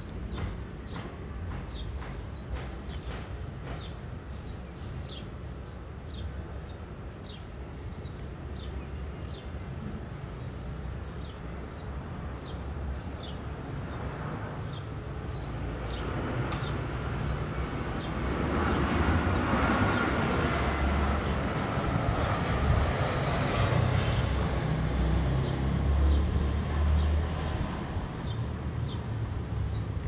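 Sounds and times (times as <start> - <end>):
birds chirping: 0.0 - 30.0
passing vehicle rumble: 13.7 - 30.0.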